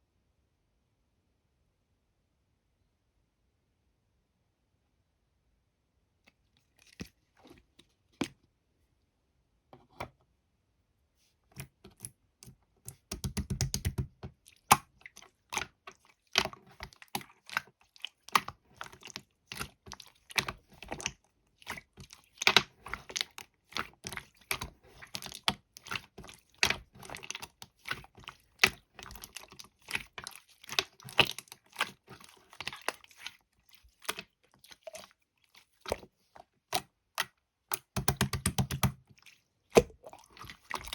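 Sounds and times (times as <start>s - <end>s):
typing on computer keyboard: 13.1s - 14.1s, 38.0s - 39.0s.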